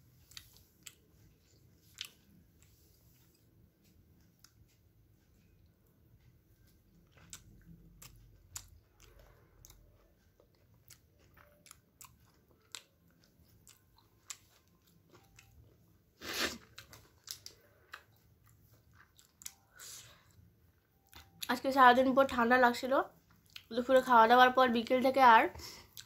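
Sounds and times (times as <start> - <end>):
person chewing: 0.1 - 3.6, 6.5 - 21.5, 23.2 - 23.7, 25.6 - 26.0.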